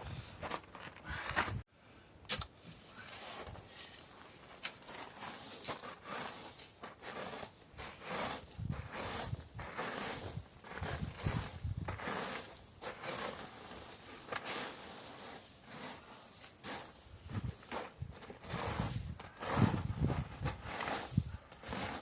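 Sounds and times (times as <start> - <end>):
gusty wind hissing: 7.8 - 12.6, 14.5 - 21.9.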